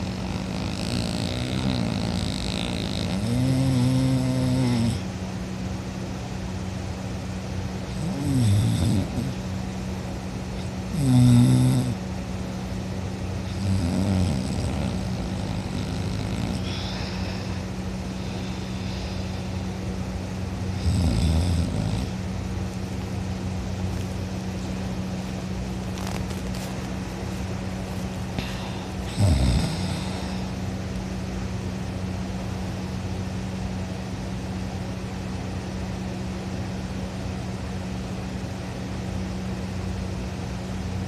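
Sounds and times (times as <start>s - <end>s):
person snoring loudly: 0.0s - 5.1s, 7.9s - 9.4s, 10.6s - 12.0s, 13.4s - 17.6s, 20.8s - 22.1s, 28.4s - 30.5s
steady low hum: 0.0s - 41.0s.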